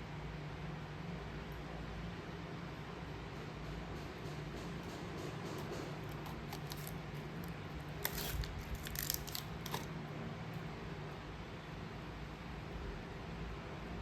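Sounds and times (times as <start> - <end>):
small sharp clicks and crinkles: 5.6 - 10.0.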